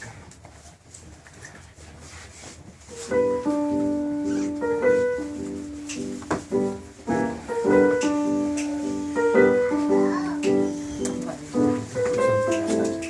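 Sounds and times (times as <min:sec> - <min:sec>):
piano melody: 0:02.9 - 0:13.0.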